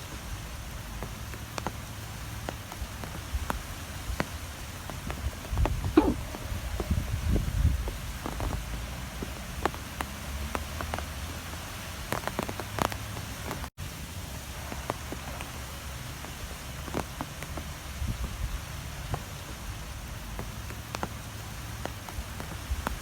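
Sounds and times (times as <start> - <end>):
light ticks and taps: 0.0 - 7.0, 19.0 - 23.0
strong wind blowing: 5.0 - 8.6.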